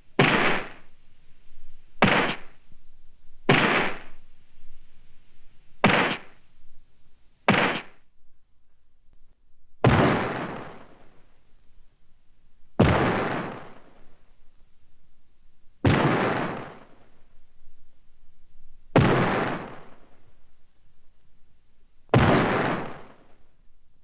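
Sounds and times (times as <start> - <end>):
blast impact sound effects: 2.0 - 2.5, 3.5 - 4.2, 5.8 - 6.4, 7.5 - 8.0.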